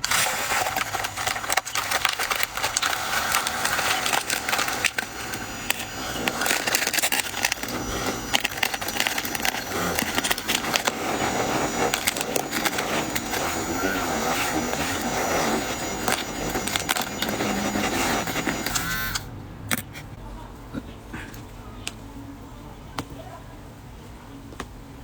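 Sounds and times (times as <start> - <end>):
freezer frost crunching: 0.0 - 19.2.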